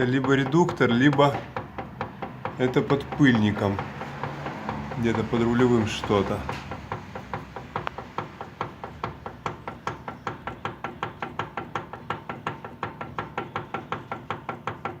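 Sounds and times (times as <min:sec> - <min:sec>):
steering rack knocking: 0:00.0 - 0:15.0.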